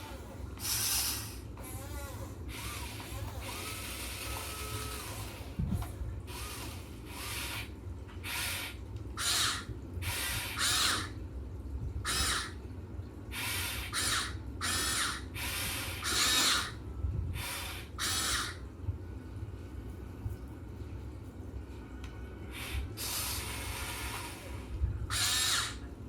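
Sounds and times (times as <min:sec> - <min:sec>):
toy excavator motors whirring: 0:00.0 - 0:11.1, 0:13.4 - 0:16.8, 0:22.6 - 0:25.8.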